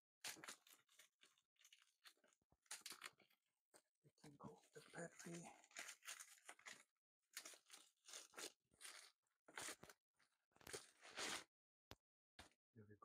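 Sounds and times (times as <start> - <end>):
packaging rustling: 0.3 - 3.3, 4.5 - 10.0, 10.6 - 11.5.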